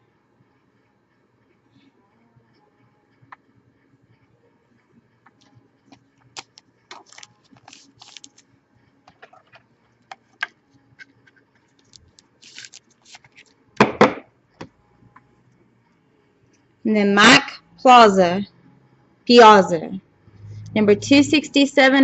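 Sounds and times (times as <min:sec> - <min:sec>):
cards sliding swishes: 0:06.4 - 0:08.4, 0:11.8 - 0:13.5
trading cards clicking: 0:06.4 - 0:08.4, 0:11.8 - 0:13.5
knock: 0:13.8 - 0:14.2.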